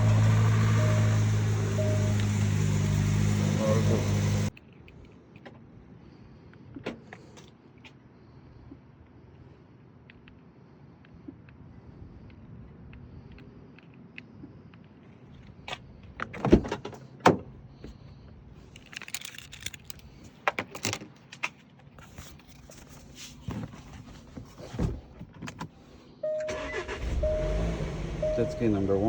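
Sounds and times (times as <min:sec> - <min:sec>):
keys clicking and rattling: 0:18.6 - 0:21.5.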